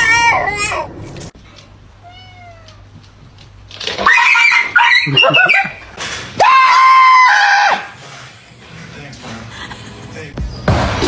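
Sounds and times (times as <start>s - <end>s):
dog crying: 4.0s - 5.8s.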